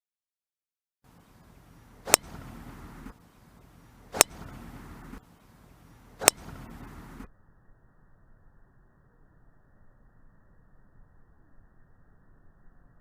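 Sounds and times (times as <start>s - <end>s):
outdoor background: 1.0s - 13.0s
faint hiss: 1.1s - 7.3s
golf club striking ball: 1.3s - 7.3s.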